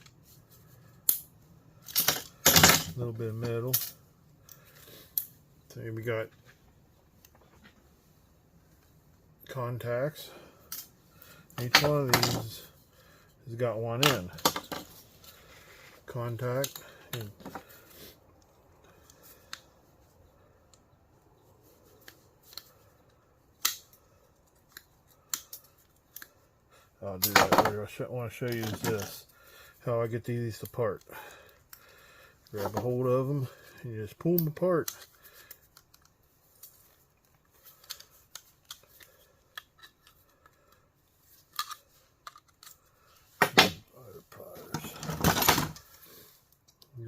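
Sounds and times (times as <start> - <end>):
plastic and metal parts clicking: 34.4 - 40.8, 41.4 - 42.9
metal parts clicking: 41.4 - 42.9.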